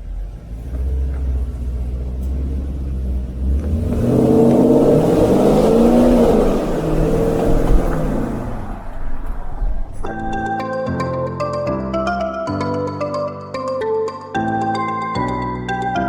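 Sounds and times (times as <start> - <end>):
car engine revving: 0.0 - 10.5.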